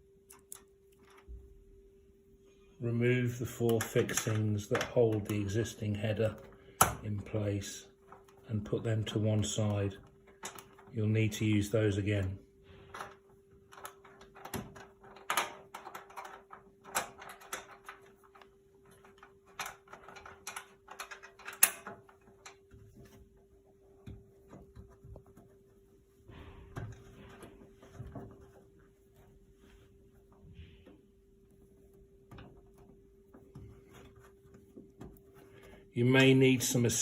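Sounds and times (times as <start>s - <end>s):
low electrical hum: 0.0s - 37.0s
metal fixings clicking and scraping: 3.6s - 11.1s, 12.9s - 23.2s.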